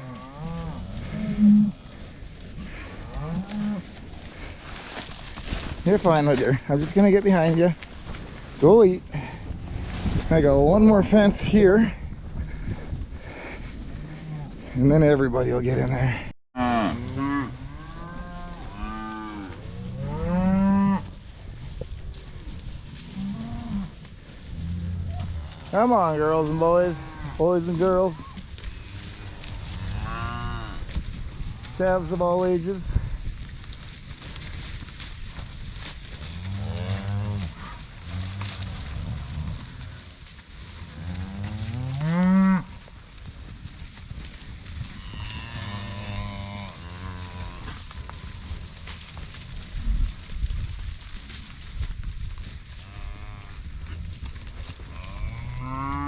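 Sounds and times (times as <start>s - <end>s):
cattle mooing: 0.0s - 2.0s, 36.4s - 39.8s.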